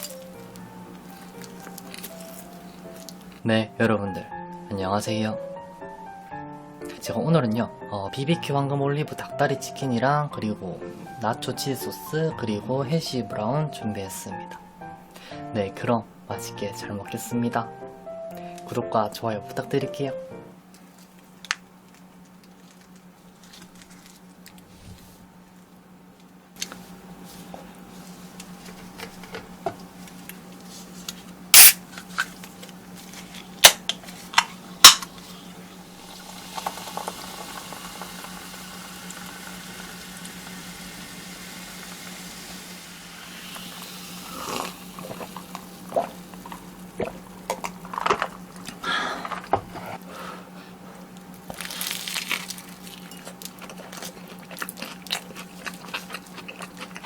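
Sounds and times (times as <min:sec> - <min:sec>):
crunching fried chicken: 0:00.0 - 0:03.4, 0:51.2 - 0:57.0.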